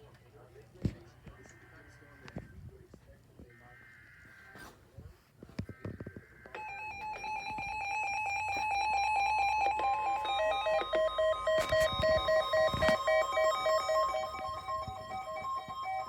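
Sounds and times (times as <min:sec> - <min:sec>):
clicks: 0:06.6 - 0:16.0
steady high tone: 0:06.6 - 0:16.0
stepping electronic beeps: 0:08.4 - 0:16.0.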